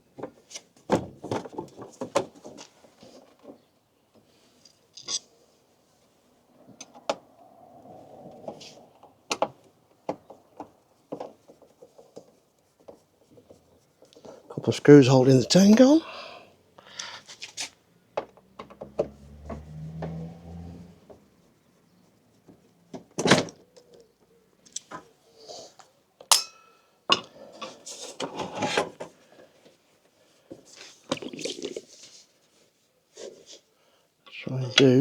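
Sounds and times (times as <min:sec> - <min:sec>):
ringing metallic clink: 0:26.3 - 0:26.9.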